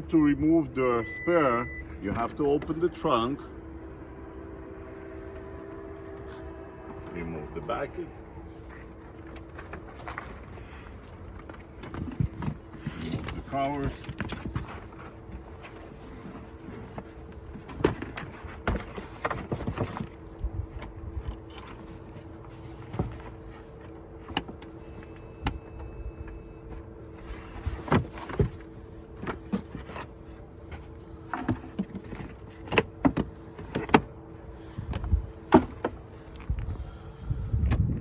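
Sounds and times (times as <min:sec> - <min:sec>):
steady two-tone hum: 0:00.0 - 0:38.0
plastic covers knocking and rattling: 0:09.4 - 0:20.2.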